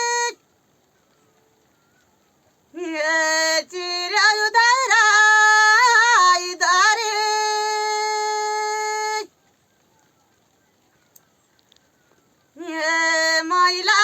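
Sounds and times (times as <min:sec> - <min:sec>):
high voice singing unaccompanied: 0:00.0 - 0:00.4, 0:02.7 - 0:09.3, 0:12.6 - 0:14.0.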